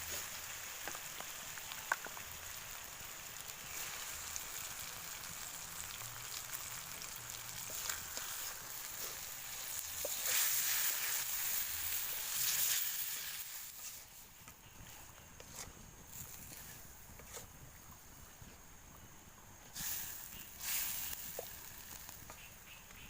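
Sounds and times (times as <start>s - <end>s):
fish sizzling in hot oil: 0.0s - 18.0s, 19.6s - 23.0s
oil popping: 0.1s - 2.7s, 3.5s - 14.6s, 19.8s - 23.0s.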